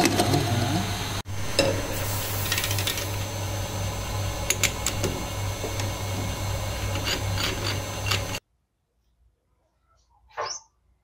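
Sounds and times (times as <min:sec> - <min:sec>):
low motor hum: 0:00.0 - 0:08.4.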